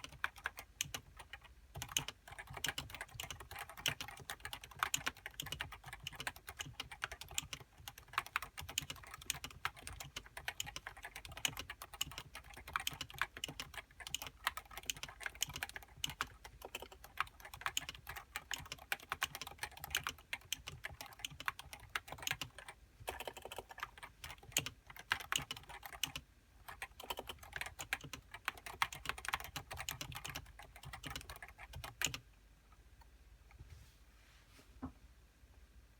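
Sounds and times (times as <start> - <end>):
keyboard typing: 0.0 - 32.2.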